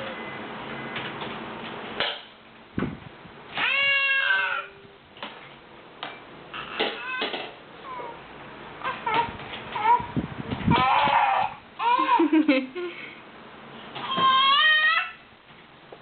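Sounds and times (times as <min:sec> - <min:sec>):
drawn-out high cry: 0:03.6 - 0:04.8, 0:10.7 - 0:12.2, 0:14.0 - 0:15.3.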